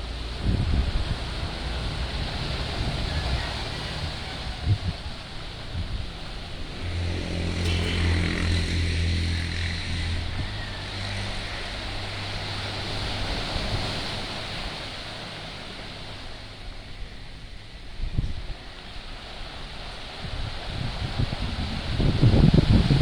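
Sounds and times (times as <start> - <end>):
vehicle engine passing: 0.0 - 18.0
surf washing: 0.0 - 23.0.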